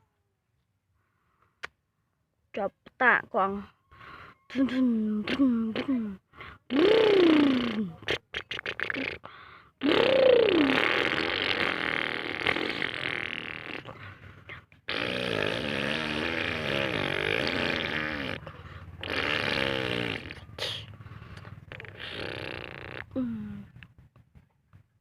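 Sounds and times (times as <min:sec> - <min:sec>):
toy truck motor revving: 0:15.0 - 0:22.9.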